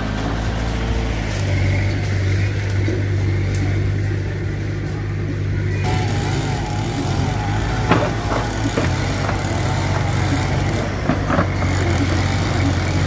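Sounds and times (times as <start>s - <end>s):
bulldozer engine running: 0.0s - 13.0s
sharp knocks: 7.8s - 12.0s.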